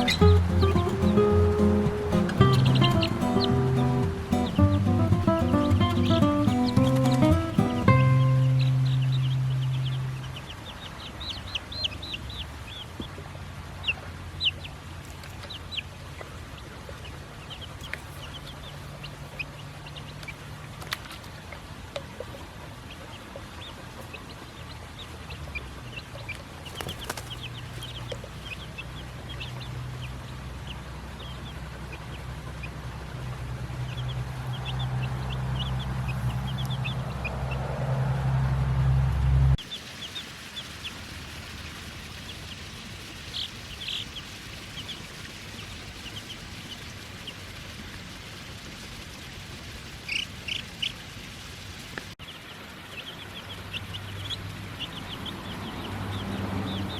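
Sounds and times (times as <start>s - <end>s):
chickens clucking: 0.0s - 10.6s, 33.8s - 37.7s, 50.1s - 51.0s
low motor hum: 31.4s - 39.6s.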